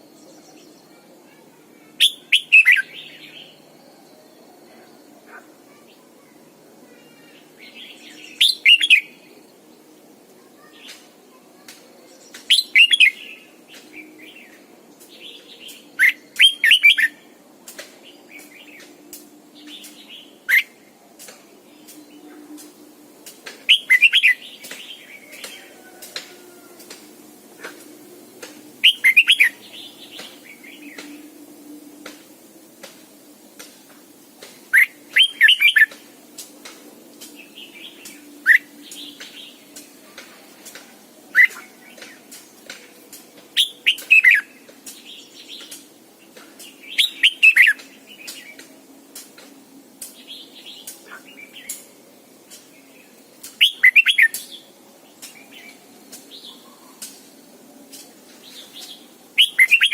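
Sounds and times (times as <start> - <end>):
bird singing whistled phrases: 2.0 - 3.0, 8.2 - 9.1, 12.5 - 13.2, 16.0 - 17.2, 23.7 - 24.4, 28.8 - 29.6, 34.8 - 35.9, 43.6 - 44.5, 46.9 - 47.8, 53.6 - 54.4, 59.4 - 59.9.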